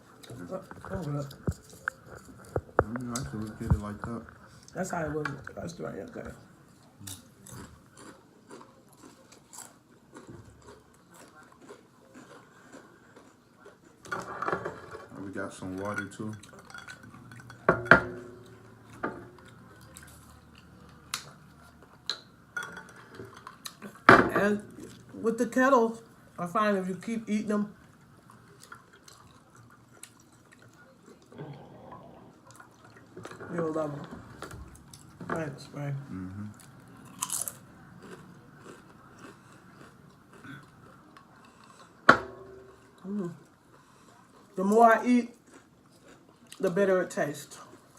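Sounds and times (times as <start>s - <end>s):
potato chips crunching and chewing: 6.9s - 14.1s, 28.2s - 31.3s, 36.6s - 42.0s, 42.7s - 47.9s
objects knocking on a table: 42.1s - 42.7s.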